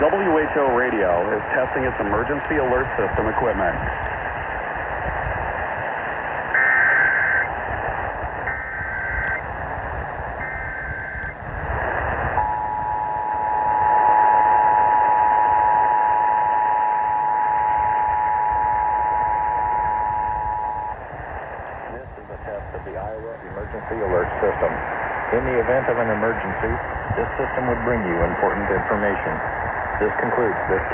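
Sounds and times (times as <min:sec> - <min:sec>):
radio hiss: 0:00.0 - 0:30.9
digital data tone bursts: 0:06.6 - 0:07.5, 0:08.5 - 0:09.4, 0:10.4 - 0:11.3
steady two-tone attention signal: 0:08.5 - 0:09.4, 0:10.4 - 0:11.3, 0:12.4 - 0:21.0.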